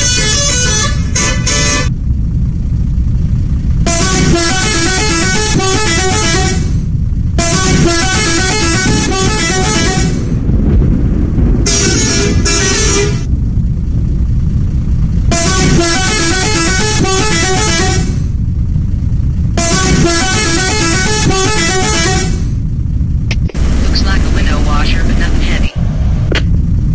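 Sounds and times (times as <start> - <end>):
bus multi-tone horn tunes: 0.0 - 1.9, 3.8 - 6.8, 7.4 - 10.2, 11.7 - 13.3, 15.3 - 18.2, 19.6 - 22.5
low engine rumble: 0.0 - 26.9.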